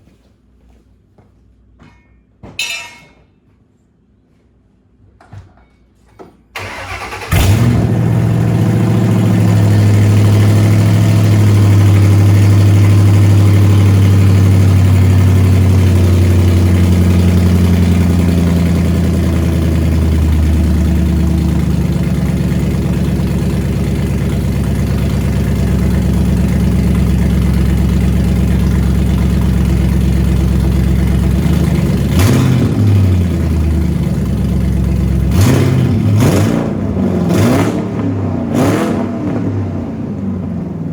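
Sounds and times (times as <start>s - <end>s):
engine revving: 6.6s - 26.9s, 30.4s - 33.9s, 34.5s - 40.5s
car engine starting and idling: 6.6s - 40.9s.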